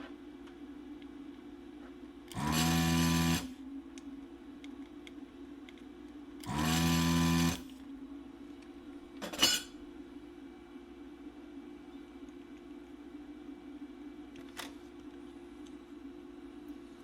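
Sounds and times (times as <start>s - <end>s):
vacuum pump whining: 2.3s - 3.5s, 6.4s - 7.7s.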